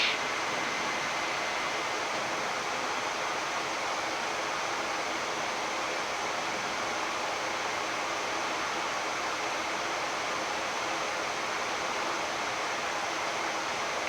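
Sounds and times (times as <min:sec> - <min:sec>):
aircraft cockpit rushing hiss: 0:00.0 - 0:02.8
faint steady hum: 0:00.0 - 0:02.8.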